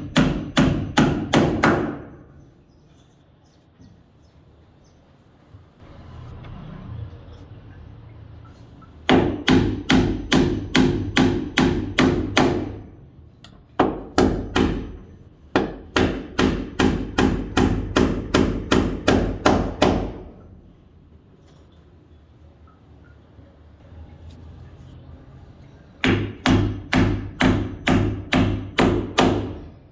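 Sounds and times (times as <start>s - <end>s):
hammer driving nail into wood: 9.1s - 12.8s, 13.8s - 20.3s, 26.0s - 29.6s.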